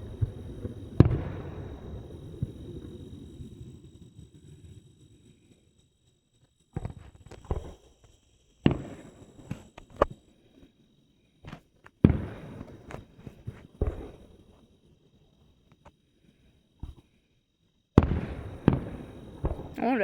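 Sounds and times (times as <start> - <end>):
fireworks bangs echoing: 0.0 - 3.1, 8.7 - 9.5, 12.0 - 14.3, 18.0 - 20.0.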